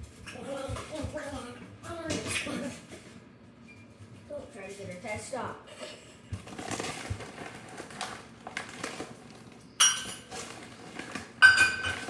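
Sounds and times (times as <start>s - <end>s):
utensils and dishes clinking: 6.4s - 12.0s.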